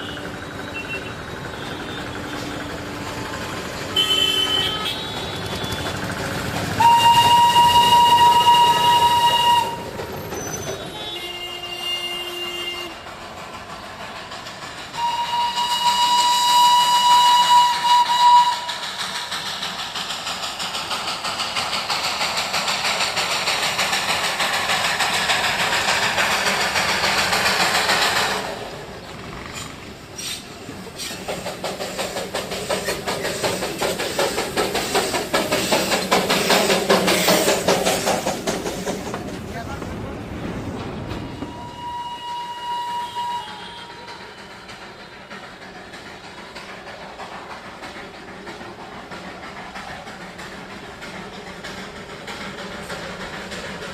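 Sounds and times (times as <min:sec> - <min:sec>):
train rhythmic clatter: 0:00.0 - 0:53.9
train horn blasts: 0:03.9 - 0:05.5, 0:06.8 - 0:09.8, 0:10.9 - 0:13.0, 0:15.0 - 0:18.7, 0:41.4 - 0:44.3.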